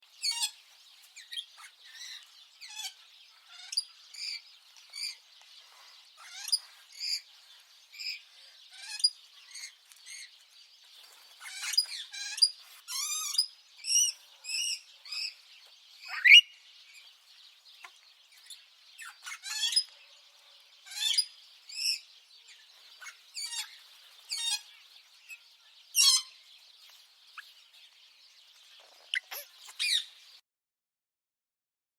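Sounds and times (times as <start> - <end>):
budgerigar chirping: 6.2 - 7.2, 11.4 - 15.4, 16.1 - 16.5, 18.4 - 19.9, 20.9 - 22.0, 23.0 - 24.7, 26.0 - 26.4, 28.9 - 30.2.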